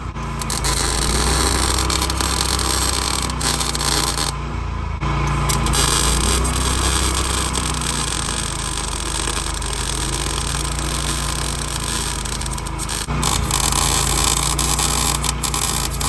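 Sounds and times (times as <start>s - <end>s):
low electrical hum: 0.0s - 16.0s
welding arc crackling: 0.0s - 16.0s.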